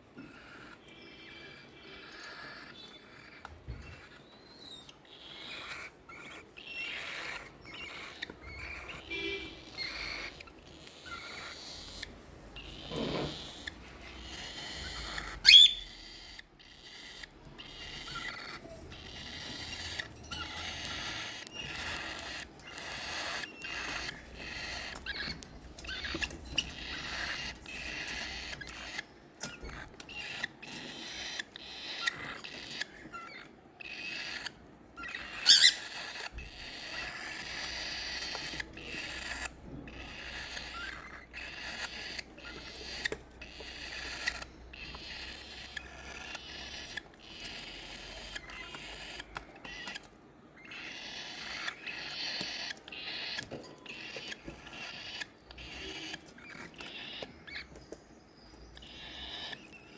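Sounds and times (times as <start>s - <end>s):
chicks making high calls: 0.0s - 59.9s
loud squeak: 12.6s - 13.7s.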